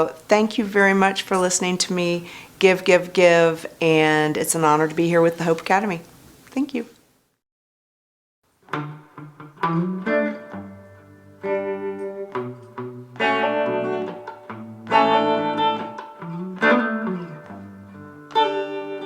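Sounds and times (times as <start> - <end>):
guitar chords ringing: 8.6 - 19.0.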